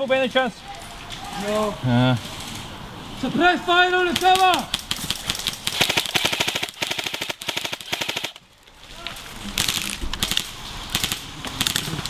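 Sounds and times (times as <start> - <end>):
airsoft rifles firing bursts: 4.0 - 12.0.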